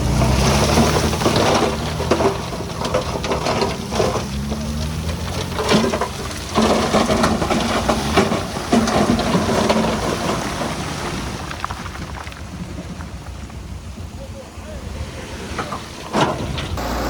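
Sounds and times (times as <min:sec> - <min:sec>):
diesel engine under load: 0:00.0 - 0:11.6, 0:13.5 - 0:17.0
stones rattling and knocking: 0:00.4 - 0:13.8.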